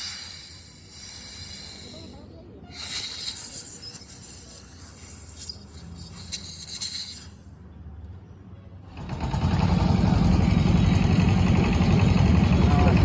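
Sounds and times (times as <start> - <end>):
hiss: 0.0 - 7.5
engine low rumble: 0.0 - 13.0.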